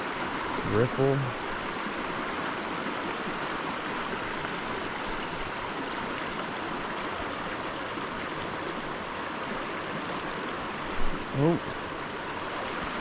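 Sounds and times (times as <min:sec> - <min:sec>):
creek rushing over rocks: 0:00.0 - 0:13.0.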